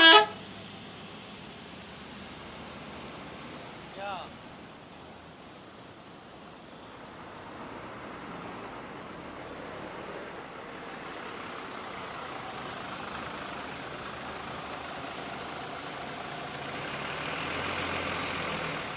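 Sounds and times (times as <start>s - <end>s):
bus engine running: 0.0s - 18.9s
road and traffic noise: 0.0s - 18.9s.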